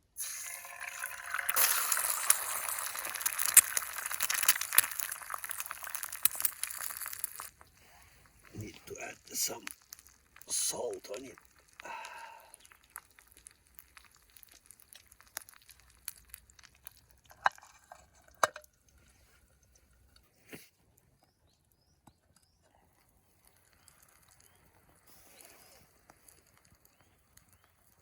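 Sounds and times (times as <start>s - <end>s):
cooking gear clicking: 0.8s - 7.5s.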